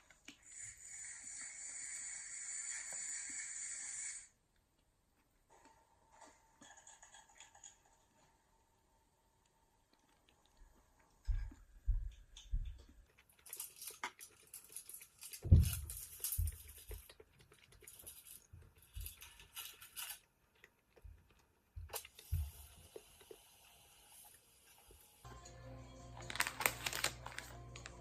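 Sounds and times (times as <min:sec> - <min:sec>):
hiss: 0:00.4 - 0:04.4.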